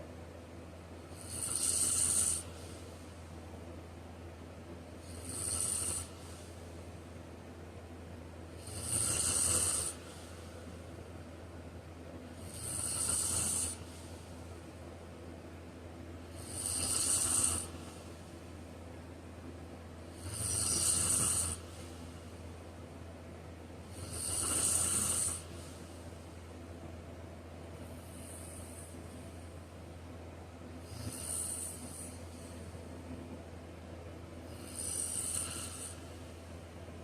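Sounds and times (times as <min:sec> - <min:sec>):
steady low hum: 0:00.0 - 0:37.0
man snoring: 0:01.2 - 0:02.5, 0:05.0 - 0:06.2, 0:08.6 - 0:10.2, 0:12.4 - 0:13.9, 0:16.3 - 0:17.8, 0:20.1 - 0:21.7, 0:23.9 - 0:25.7, 0:30.9 - 0:32.2, 0:34.5 - 0:36.1.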